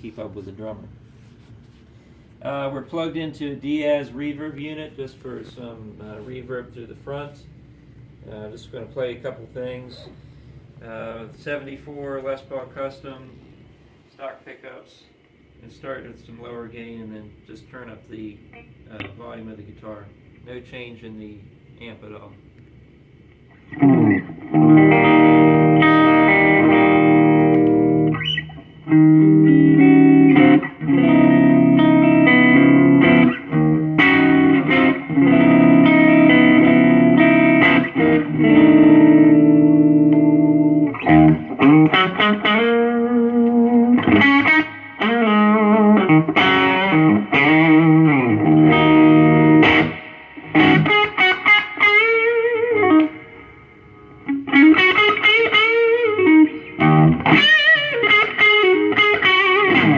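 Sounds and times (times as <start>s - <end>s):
overdriven electric guitar chords: 23.5s - 59.9s
electric guitar lead with bends: 23.6s - 59.9s.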